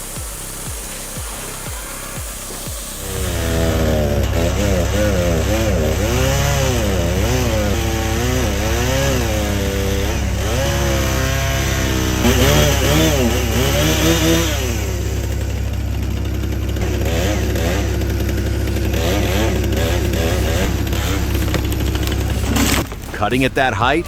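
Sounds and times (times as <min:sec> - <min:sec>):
chainsaw running and cutting: 0:00.0 - 0:24.0.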